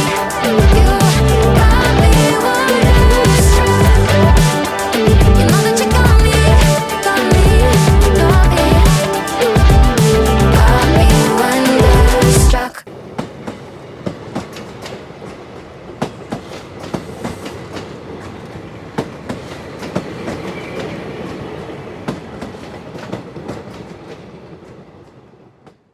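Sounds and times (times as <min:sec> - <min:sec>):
background music: 0:00.0 - 0:12.8
train rumble: 0:00.0 - 0:25.9
train wheels clacking on rails: 0:13.0 - 0:25.9.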